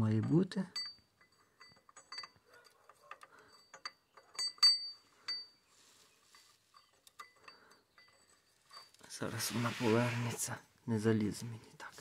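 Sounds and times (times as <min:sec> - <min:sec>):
metal engine parts clinking: 0:00.1 - 0:09.3.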